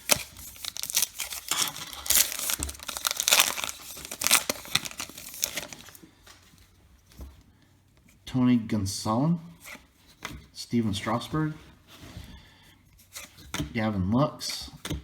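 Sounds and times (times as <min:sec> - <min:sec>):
wrapper crinkling and tearing: 0:00.0 - 0:06.0.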